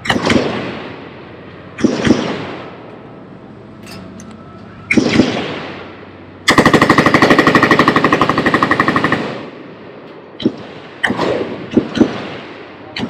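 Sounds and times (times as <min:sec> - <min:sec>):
machine gun fire: 0:00.0 - 0:01.2, 0:01.8 - 0:02.8, 0:04.9 - 0:09.5.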